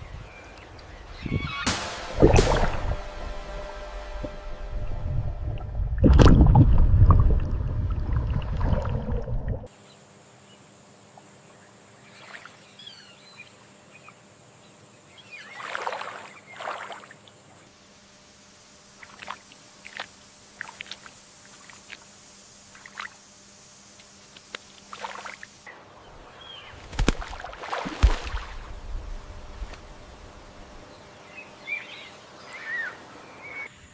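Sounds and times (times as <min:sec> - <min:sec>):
water sloshing and splashing: 0:05.6 - 0:09.7, 0:15.5 - 0:17.3, 0:24.8 - 0:25.5, 0:26.7 - 0:30.8
small splashes: 0:15.4 - 0:17.3, 0:19.0 - 0:22.1, 0:24.4 - 0:25.6, 0:26.7 - 0:30.8.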